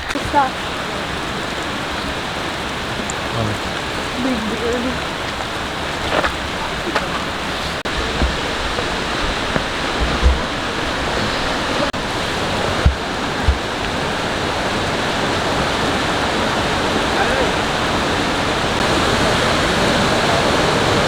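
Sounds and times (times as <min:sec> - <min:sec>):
waterfall rushing: 0:00.0 - 0:21.0
low thumps: 0:04.0 - 0:15.1.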